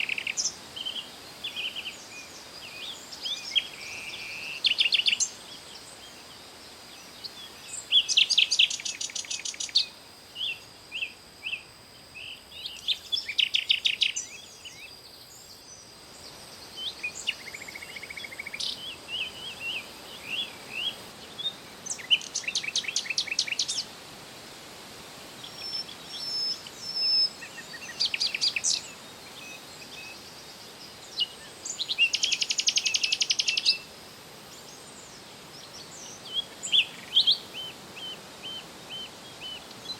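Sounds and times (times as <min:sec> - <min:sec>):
songbird trilling: 0:07.6 - 0:11.6, 0:12.2 - 0:15.0, 0:25.6 - 0:30.2, 0:31.2 - 0:33.9.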